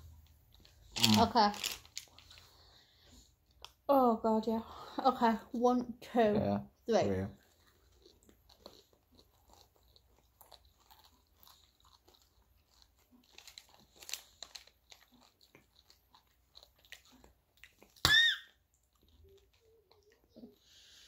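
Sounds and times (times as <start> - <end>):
crunching and chewing candy: 0.0 - 3.8, 7.4 - 21.0
high-pitched vocal squeal: 18.1 - 18.5.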